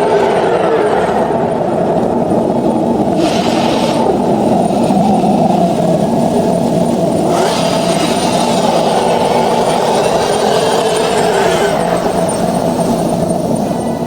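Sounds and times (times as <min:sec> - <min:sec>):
dragon roar: 0:03.0 - 0:06.0, 0:07.2 - 0:12.4.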